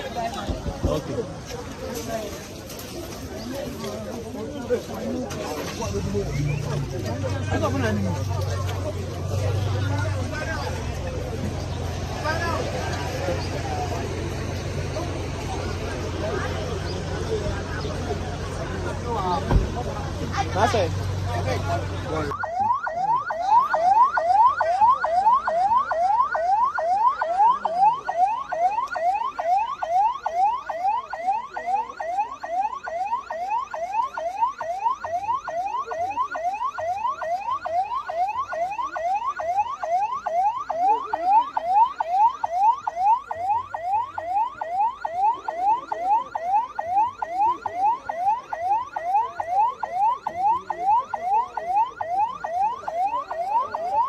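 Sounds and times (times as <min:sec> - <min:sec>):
crowd talking: 0:00.0 - 0:54.0
electronic siren yelping: 0:22.1 - 0:54.0.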